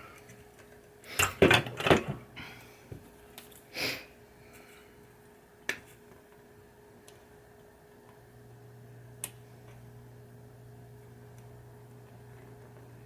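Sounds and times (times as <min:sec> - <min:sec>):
faint steady hum: 0:00.0 - 0:13.0
breathy sniff: 0:03.7 - 0:04.7.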